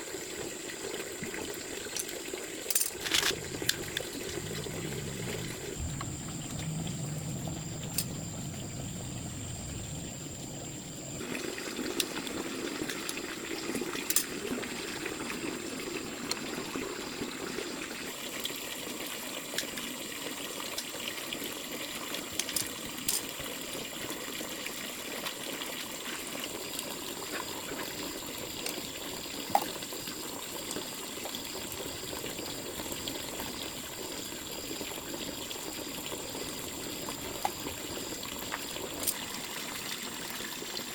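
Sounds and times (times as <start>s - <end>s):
water trickling: 0.0s - 40.9s
high-pitched whine: 3.4s - 11.2s.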